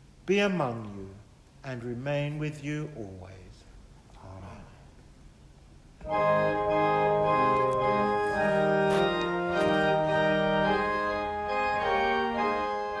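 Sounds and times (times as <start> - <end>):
organ playing sustained chords: 6.0 - 13.0.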